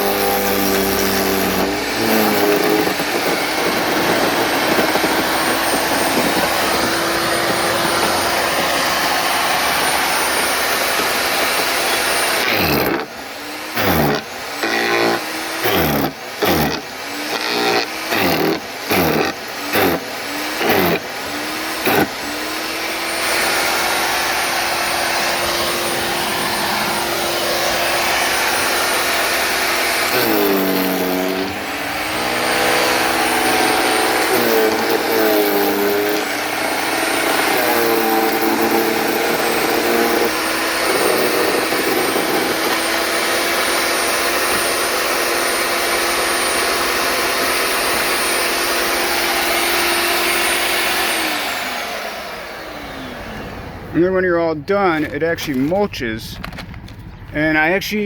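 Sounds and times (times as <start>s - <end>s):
sticks being chipped: 0.0s - 13.1s, 13.7s - 22.2s, 27.5s - 45.3s
wood chipper motor whine: 0.0s - 57.3s.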